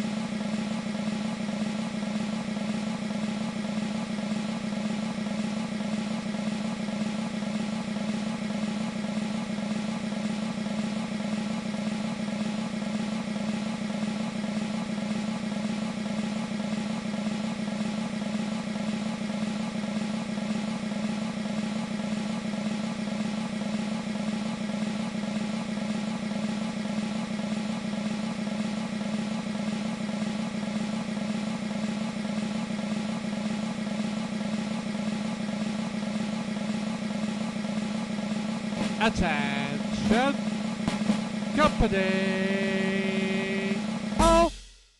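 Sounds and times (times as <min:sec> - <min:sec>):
snare drum roll: 0:40.8 - 0:41.4.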